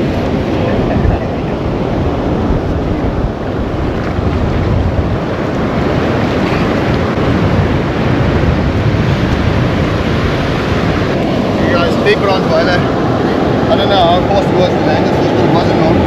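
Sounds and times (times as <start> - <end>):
surf breaking on shore: 0.0 - 16.0
wind buffeting microphone: 0.0 - 16.0.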